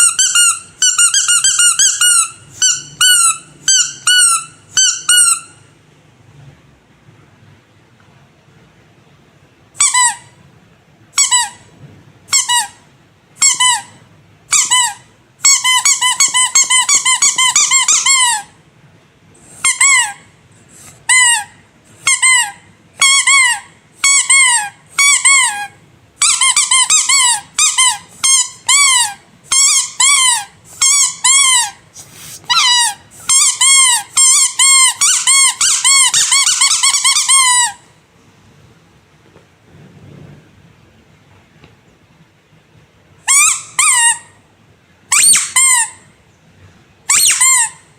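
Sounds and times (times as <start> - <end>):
squeaky rubber toys squeaking: 0.0 - 5.7, 9.8 - 10.4, 11.2 - 11.7, 12.3 - 18.6, 19.5 - 37.9, 43.3 - 44.4, 45.1 - 46.1, 47.1 - 47.9.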